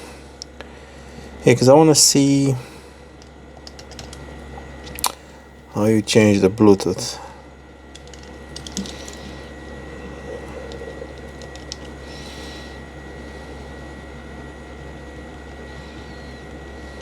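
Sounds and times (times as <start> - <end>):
low background hum: 0.0 - 17.0.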